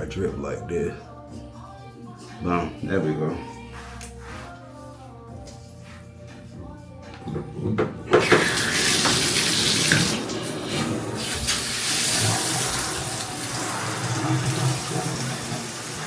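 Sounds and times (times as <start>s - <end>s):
water running into tub: 8.2s - 16.0s.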